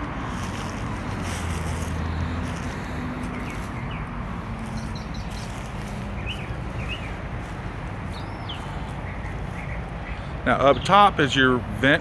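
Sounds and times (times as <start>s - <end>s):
high bird chirps: 4.7s - 7.2s, 8.1s - 10.9s.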